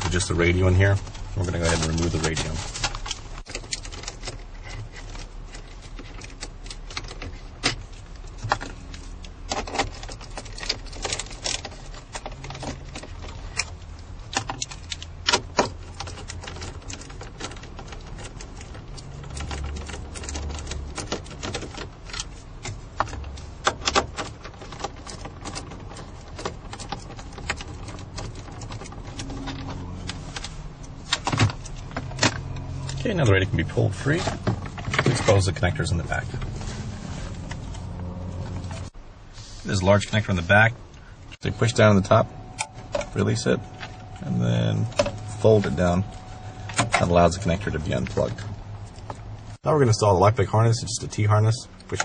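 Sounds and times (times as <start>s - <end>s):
low steady hum: 0.0s - 52.0s
hand tools clicking and rattling: 1.4s - 33.0s.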